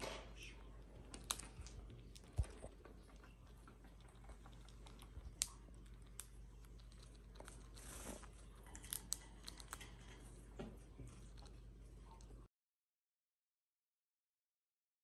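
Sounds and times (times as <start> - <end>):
birds cracking dried chips: 0.9 - 10.3.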